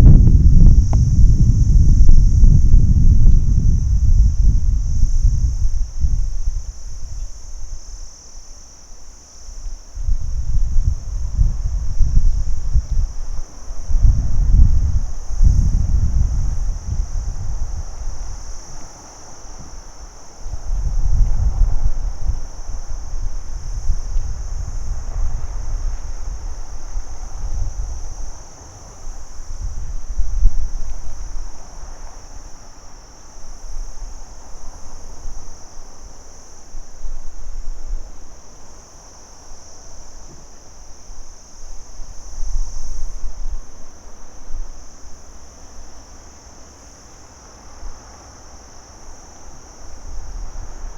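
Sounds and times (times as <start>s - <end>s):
crickets trilling: 0.0s - 50.9s.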